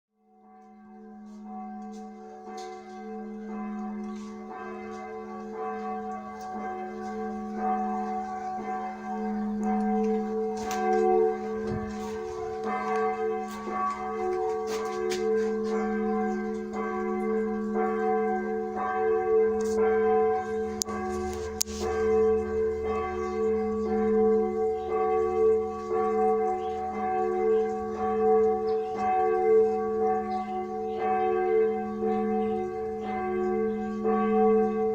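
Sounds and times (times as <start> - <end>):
large church bell ringing: 0.2 - 34.9.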